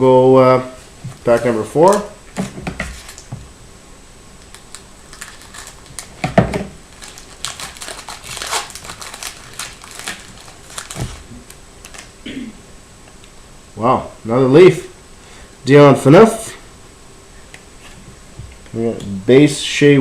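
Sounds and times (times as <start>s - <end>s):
wrapper crinkling: 2.9s - 3.4s, 4.4s - 12.2s.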